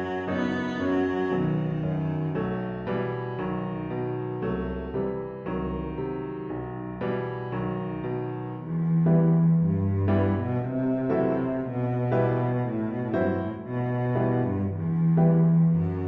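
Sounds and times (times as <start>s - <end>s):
low bowed strings: 0.0s - 3.6s, 8.6s - 16.0s
piano chords: 0.0s - 16.0s.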